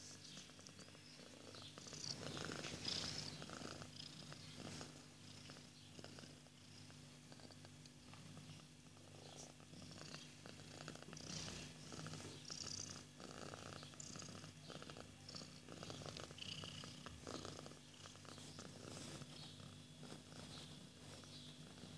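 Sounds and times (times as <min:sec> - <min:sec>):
kittens scratching and rustling: 0:00.0 - 0:05.0, 0:17.1 - 0:21.9
cat purring: 0:00.0 - 0:21.9.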